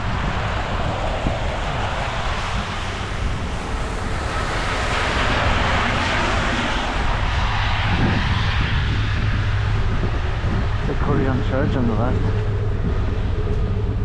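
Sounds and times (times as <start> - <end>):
road vehicle rumble: 0.0 - 11.0
rush of tyre noise: 0.0 - 13.3.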